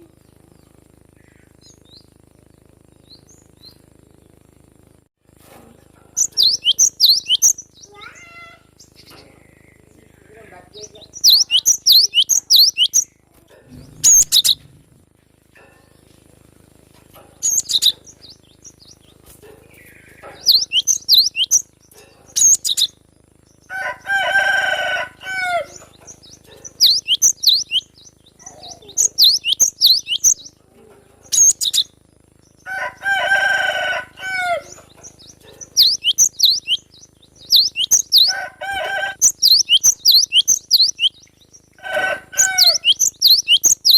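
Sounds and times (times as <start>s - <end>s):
bird singing sharp high notes: 6.2s - 8.0s, 11.1s - 13.1s, 19.8s - 21.7s, 25.7s - 28.1s, 28.7s - 30.5s, 35.2s - 38.4s, 39.1s - 41.3s
lower bird call: 6.2s - 9.9s, 11.1s - 14.8s, 19.7s - 21.7s, 23.6s - 30.6s, 32.5s - 43.9s.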